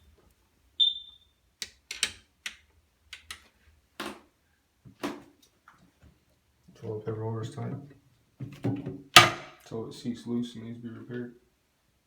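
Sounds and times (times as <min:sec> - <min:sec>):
high squeak: 0:00.8 - 0:01.3
metal and plastic parts clicking: 0:01.6 - 0:02.6.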